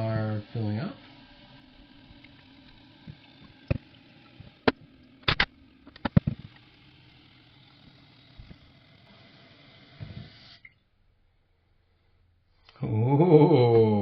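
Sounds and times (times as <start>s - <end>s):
toilet tank refilling: 0.0s - 10.8s
sharp clicks and knocks: 3.0s - 6.7s.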